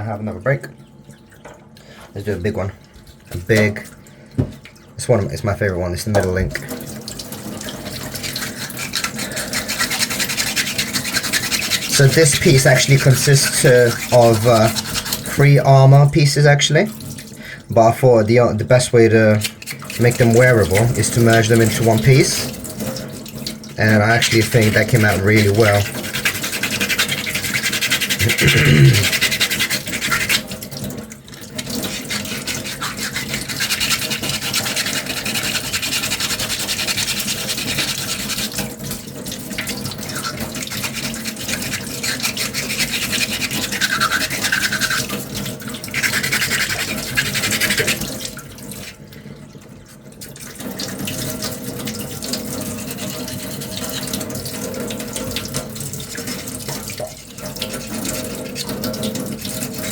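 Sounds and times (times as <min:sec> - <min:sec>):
sandpaper scrubbing plastic: 0:07.7 - 0:15.6, 0:19.4 - 0:22.5, 0:23.9 - 0:30.6, 0:31.6 - 0:38.7, 0:40.0 - 0:49.0.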